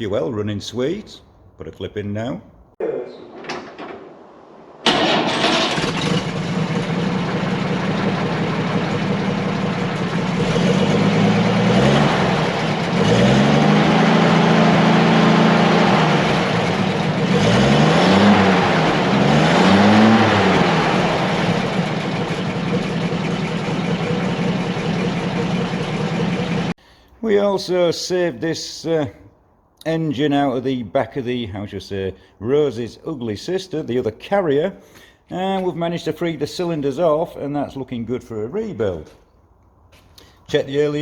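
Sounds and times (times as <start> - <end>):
truck engine idling and revving: 4.8 - 26.8.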